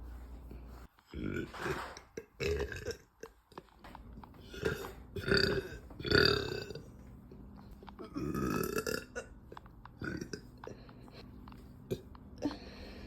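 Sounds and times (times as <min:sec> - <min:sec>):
woman belching: 0:04.5 - 0:06.8, 0:08.0 - 0:09.3.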